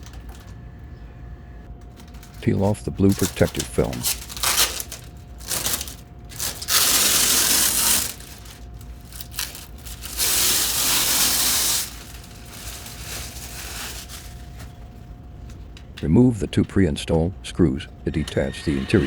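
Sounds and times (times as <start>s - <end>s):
plastic film peeling: 3.1s - 14.8s.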